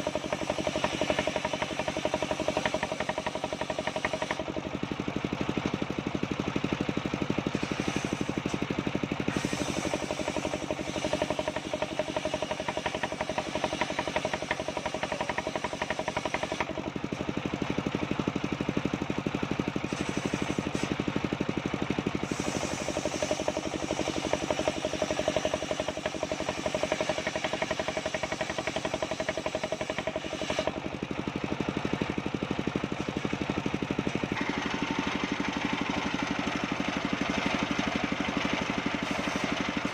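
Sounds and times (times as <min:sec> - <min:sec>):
band saw engine drone: 0:00.0 - 0:04.7, 0:09.2 - 0:16.8, 0:22.0 - 0:30.9, 0:32.9 - 0:39.9.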